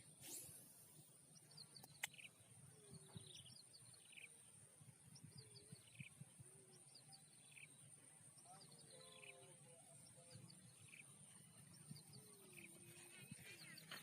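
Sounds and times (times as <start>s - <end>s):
bird singing: 0.9s - 14.0s.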